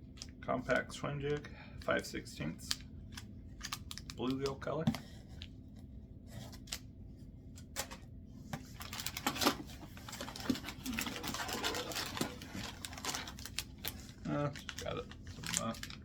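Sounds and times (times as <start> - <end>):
plastic crinkling and rustling: 8.6 - 16.0.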